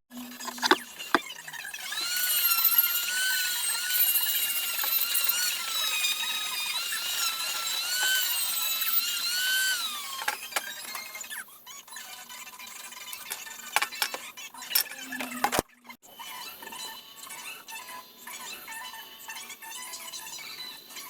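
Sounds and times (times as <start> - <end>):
power tool whining: 0.1 - 11.4.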